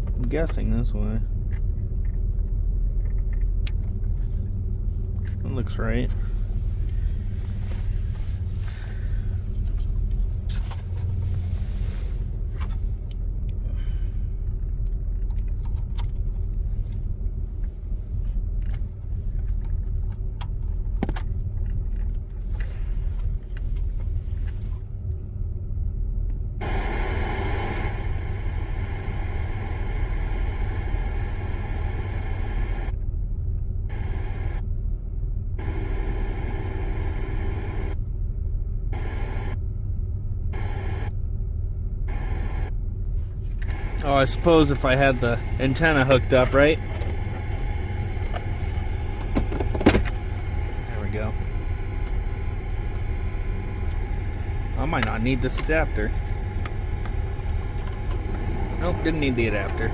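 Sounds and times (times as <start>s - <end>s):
steady low rumble: 0.0s - 59.9s
radio static hiss: 26.6s - 32.9s, 35.6s - 38.0s, 39.0s - 39.6s, 40.5s - 41.1s, 42.1s - 59.9s.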